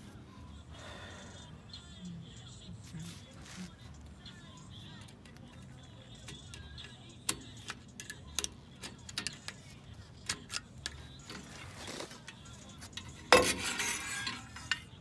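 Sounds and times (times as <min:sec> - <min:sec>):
metal tools clicking and tapping: 0:06.2 - 0:15.0
short metal scrape: 0:13.4 - 0:14.6.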